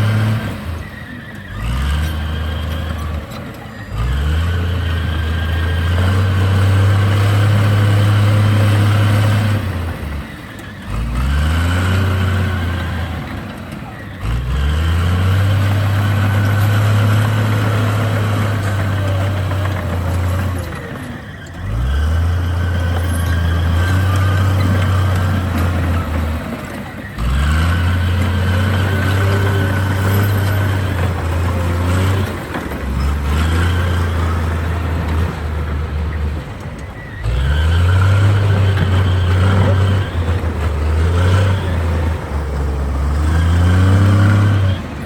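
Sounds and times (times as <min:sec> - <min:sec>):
diesel engine revving: 0:00.0 - 0:45.0.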